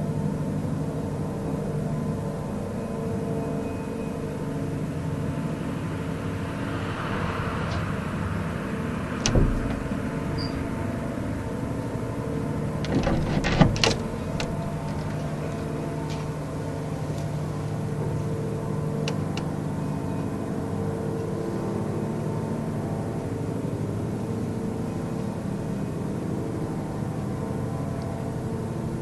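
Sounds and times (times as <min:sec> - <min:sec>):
low droning hum: 0:00.0 - 0:29.0
thump: 0:09.2 - 0:10.5, 0:12.9 - 0:14.5
clicks and knocks: 0:09.2 - 0:10.6, 0:12.8 - 0:15.3.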